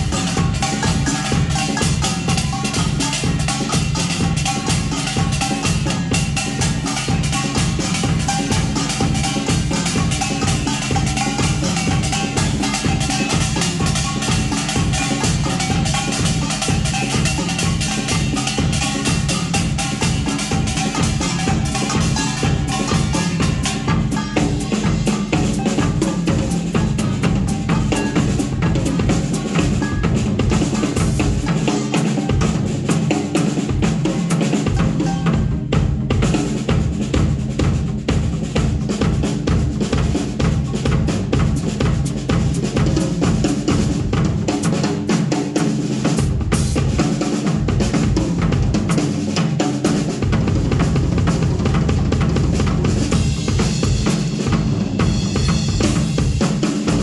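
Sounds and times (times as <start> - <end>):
steady low notes: 0.0 - 44.7
drum kit playing: 0.0 - 57.0.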